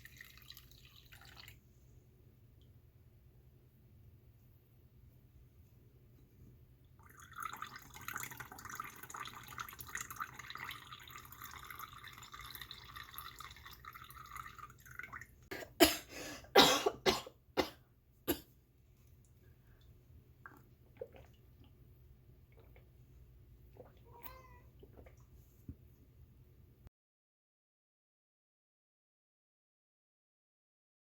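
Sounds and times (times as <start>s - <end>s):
liquid pouring: 0.0s - 1.6s, 7.0s - 15.5s, 19.8s - 21.8s, 22.5s - 23.0s, 23.7s - 25.4s
person coughing: 15.5s - 18.5s.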